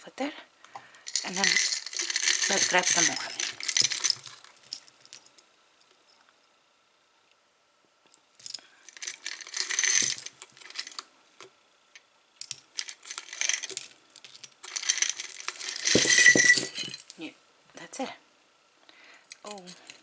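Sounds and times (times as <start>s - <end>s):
jewelry clinking and rattling: 1.0s - 6.2s, 8.4s - 11.1s, 12.4s - 17.2s.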